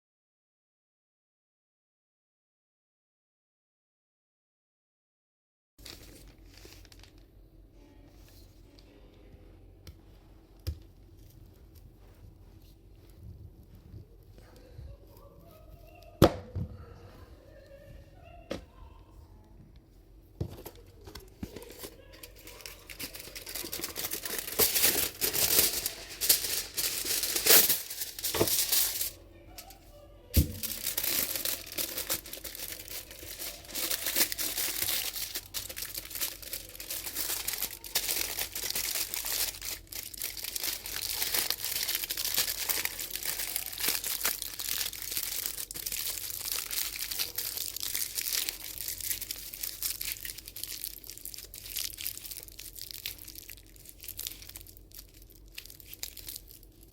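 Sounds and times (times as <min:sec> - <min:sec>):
dense crinkling and crunching: 0:05.8 - 0:07.3, 0:20.4 - 0:56.9.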